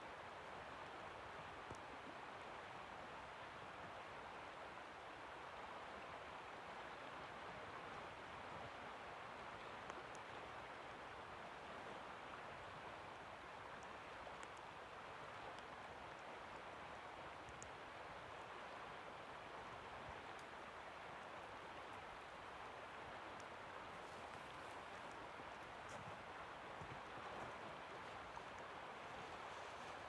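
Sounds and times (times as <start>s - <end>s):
river water flowing: 0.0s - 30.0s
tiny high ticks: 13.8s - 14.8s, 17.4s - 17.8s, 20.3s - 22.3s, 23.3s - 26.0s.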